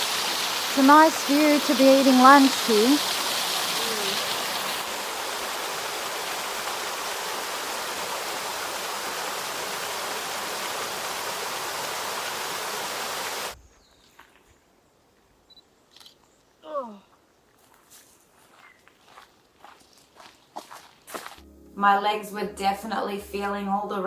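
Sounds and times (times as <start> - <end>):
water rushing: 0.0 - 13.6.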